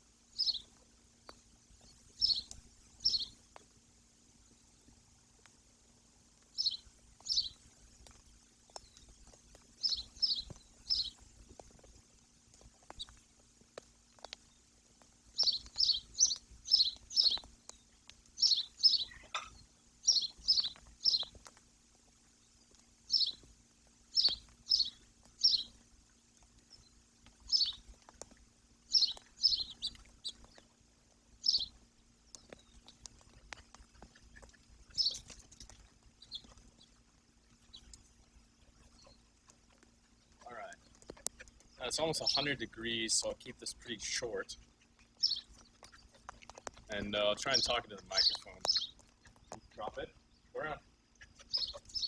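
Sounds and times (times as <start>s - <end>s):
bird chirping: 0.3s - 3.4s, 6.5s - 11.9s, 15.3s - 21.6s, 22.4s - 23.5s, 24.1s - 25.8s, 26.4s - 28.3s, 28.9s - 30.8s, 31.4s - 52.0s.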